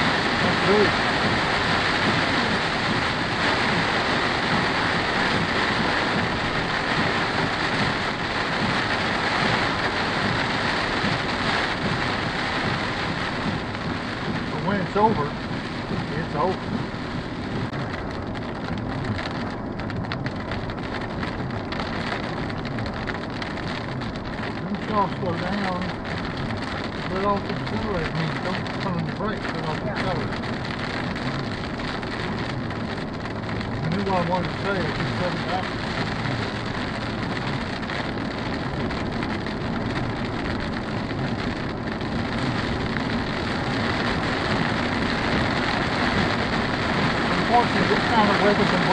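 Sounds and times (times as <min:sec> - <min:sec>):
heavy rain hissing: 0:00.0 - 0:48.9
raindrops tapping on car: 0:00.0 - 0:48.9
wet road noise: 0:00.0 - 0:48.9.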